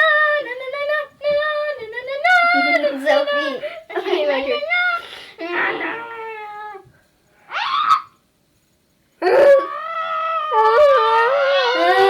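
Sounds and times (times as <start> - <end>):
girl making high-pitched wails: 9.2 - 12.0.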